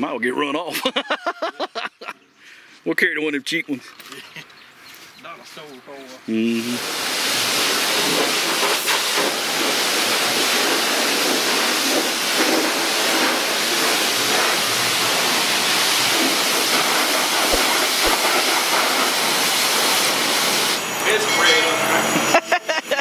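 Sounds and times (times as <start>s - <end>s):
high-pressure water spraying: 6.6s - 20.9s.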